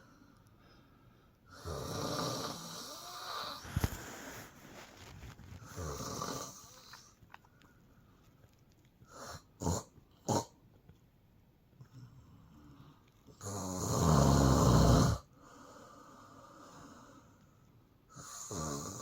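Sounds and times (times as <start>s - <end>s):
woman snoring: 1.5s - 4.0s, 5.6s - 7.0s, 13.4s - 15.3s, 18.2s - 19.0s
soft breathing: 2.9s - 9.5s.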